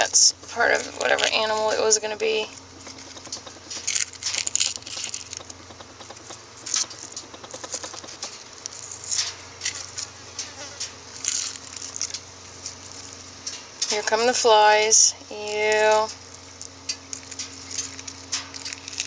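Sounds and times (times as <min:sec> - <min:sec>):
egg shell crackling and wet clicks: 0:02.5 - 0:14.0, 0:15.9 - 0:19.0.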